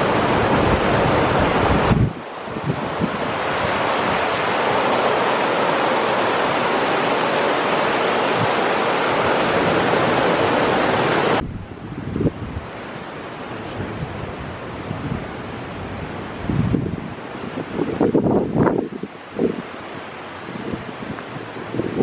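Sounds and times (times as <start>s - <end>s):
wind rushing: 0.0s - 12.8s
heavy rain: 0.0s - 22.0s.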